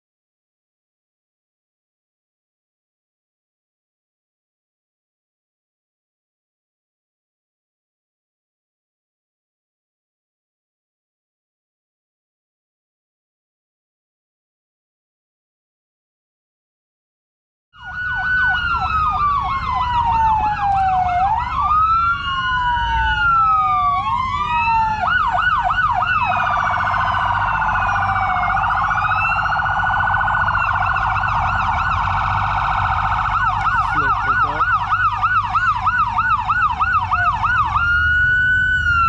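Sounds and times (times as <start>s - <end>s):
sirens wailing and yelping: 17.8s - 39.0s.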